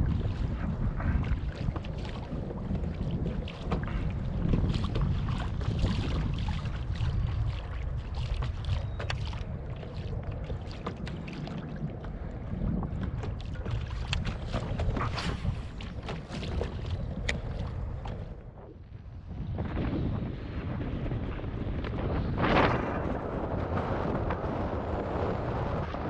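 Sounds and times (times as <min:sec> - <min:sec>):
water slapping boat hull: 0:00.0 - 0:19.8
wind buffeting microphone: 0:00.0 - 0:26.0.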